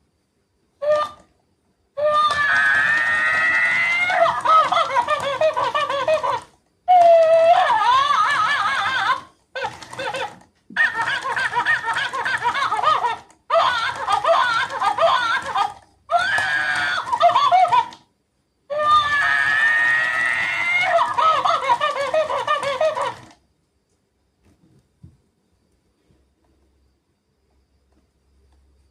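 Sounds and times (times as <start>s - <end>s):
toy electronic voice giggling: 3.3s - 18.1s, 19.9s - 23.4s.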